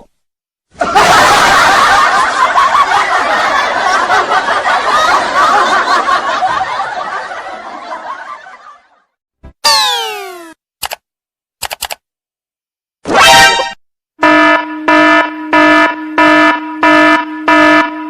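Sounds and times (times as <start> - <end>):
many voices laughing: 0.8 - 9.1.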